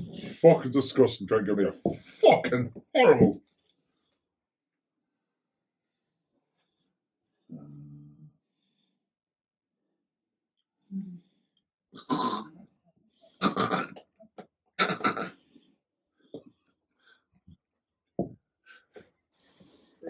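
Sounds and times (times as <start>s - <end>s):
person coughing and gagging: 13.4s - 14.0s, 14.8s - 15.3s.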